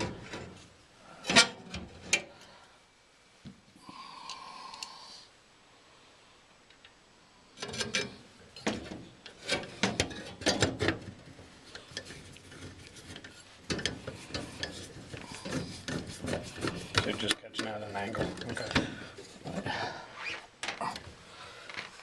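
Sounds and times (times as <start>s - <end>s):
screwdriver scraping sheet metal: 12.9s - 17.4s.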